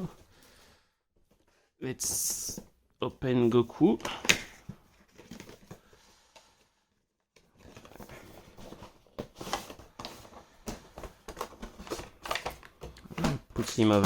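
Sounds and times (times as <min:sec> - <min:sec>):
plastic packaging rustling and clicking: 0:03.8 - 0:06.6, 0:07.3 - 0:14.0.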